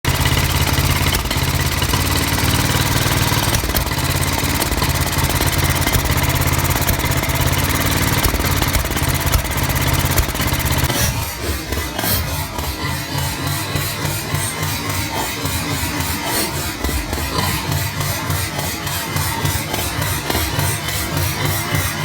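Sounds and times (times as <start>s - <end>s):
motorcycle engine running: 0.0s - 22.0s
engine backfire pops: 0.1s - 12.6s.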